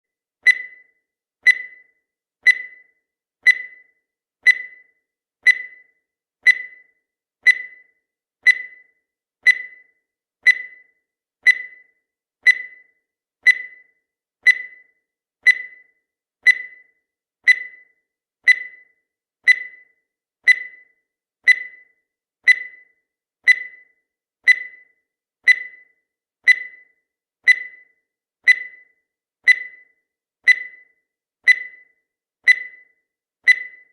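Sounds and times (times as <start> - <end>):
short high timer beeps: 0.4 - 0.9, 1.5 - 1.9, 2.5 - 2.9, 3.5 - 3.9, 4.5 - 4.9, 5.5 - 5.9, 30.5 - 30.9, 31.5 - 31.9, 32.5 - 32.9, 33.5 - 33.9.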